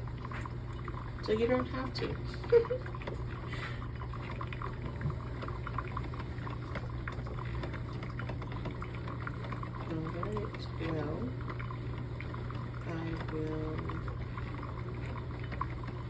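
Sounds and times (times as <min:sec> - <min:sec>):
coffee trickling into carafe: 0:00.0 - 0:16.0
steady low hum: 0:00.0 - 0:16.0.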